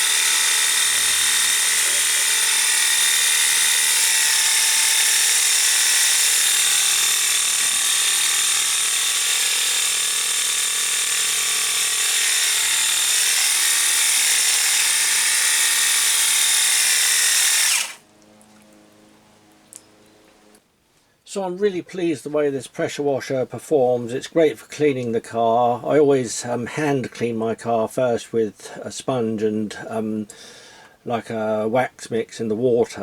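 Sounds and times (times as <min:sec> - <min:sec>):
electric motor whine: 0:00.0 - 0:18.0.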